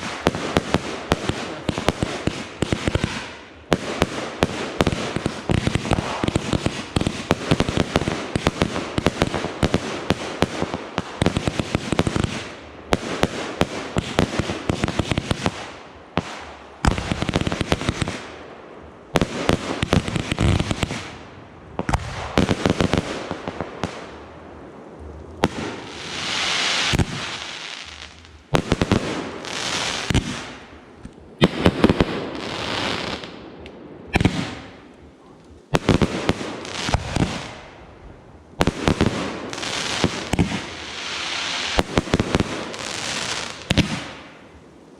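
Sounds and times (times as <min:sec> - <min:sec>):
fireworks bangs and crackles: 0:00.0 - 0:44.9
fireworks hissing: 0:25.4 - 0:30.7, 0:38.9 - 0:44.2.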